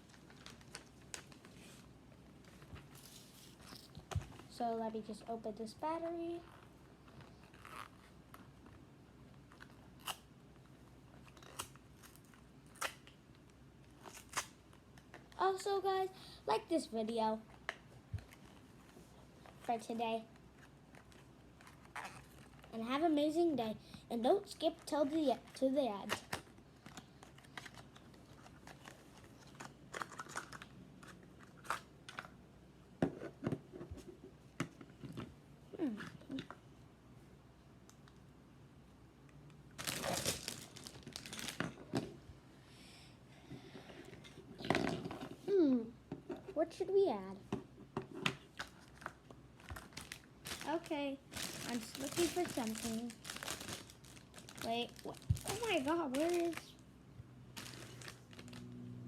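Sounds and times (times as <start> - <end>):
plastic packaging crinkling: 0.0 - 1.8, 24.7 - 32.3, 39.8 - 41.8, 48.5 - 56.8, 57.5 - 58.7.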